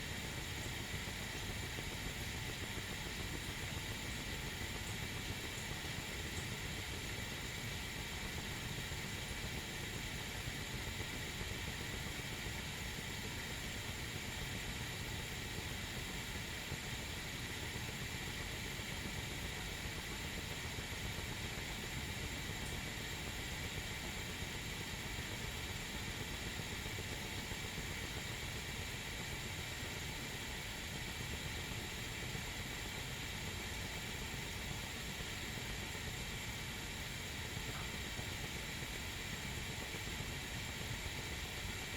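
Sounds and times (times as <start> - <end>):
kettle hissing with low rumble: 0.0 - 41.9.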